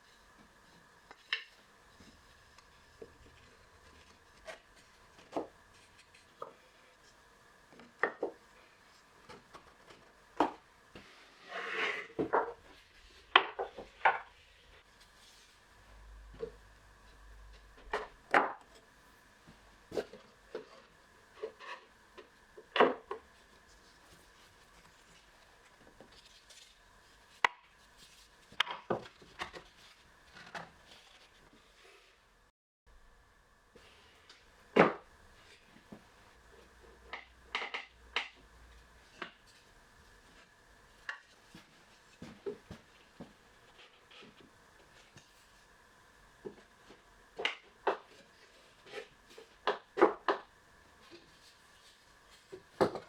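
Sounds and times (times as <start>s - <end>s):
wood scraping rub: 11.0s - 15.7s.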